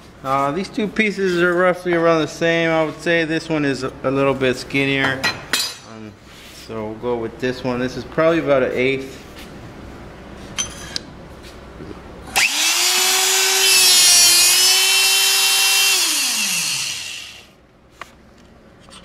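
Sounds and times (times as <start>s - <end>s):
hydraulic pump motor whining: 12.3s - 17.5s.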